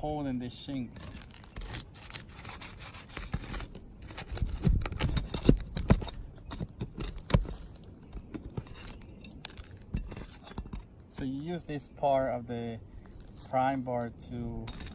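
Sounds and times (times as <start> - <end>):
pry bar scraping and knocking: 0.7 - 11.4.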